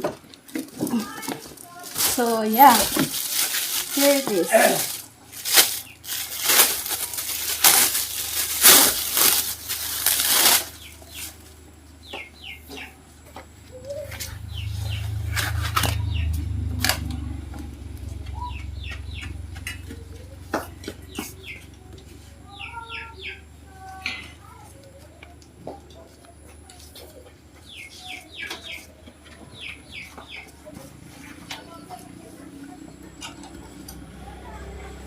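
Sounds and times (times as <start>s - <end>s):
rustling flapping noise: 0.6s - 11.6s
low rumble: 13.8s - 20.5s
bird chirps: 18.3s - 21.7s.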